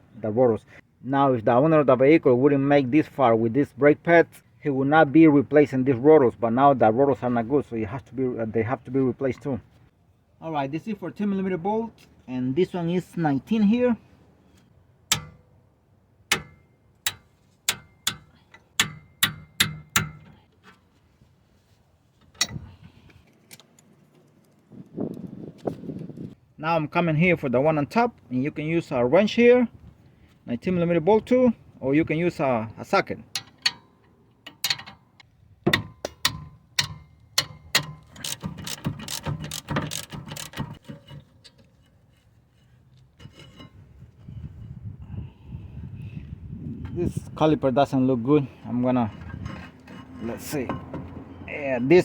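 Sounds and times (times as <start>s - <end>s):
ratchet wrench clicking: 36.2s - 40.8s.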